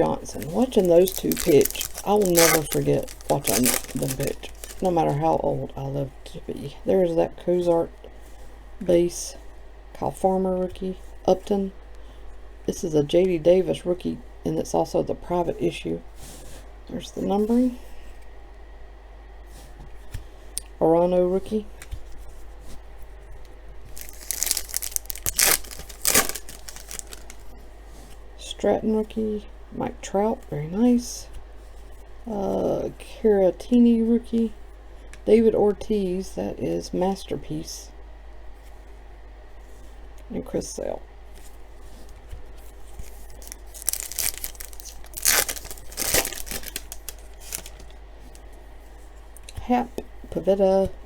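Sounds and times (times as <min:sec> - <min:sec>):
wrapper tearing and crinkling: 0:00.2 - 0:05.1, 0:23.9 - 0:27.5, 0:43.0 - 0:48.0.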